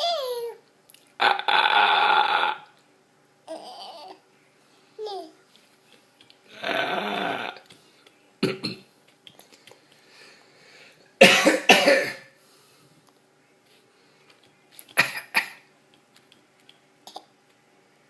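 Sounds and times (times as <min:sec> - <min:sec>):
baby making raspy throaty noises: 0:01.2 - 0:02.7, 0:06.5 - 0:07.6.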